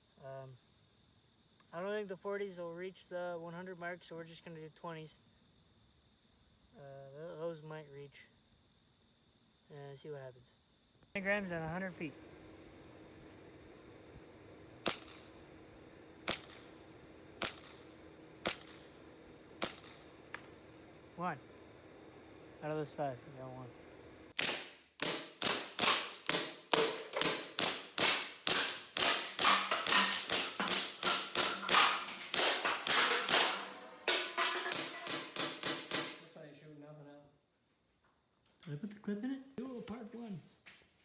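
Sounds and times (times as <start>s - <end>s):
airsoft gun shots: 14.8s - 15.4s, 16.2s - 20.8s, 24.4s - 36.3s.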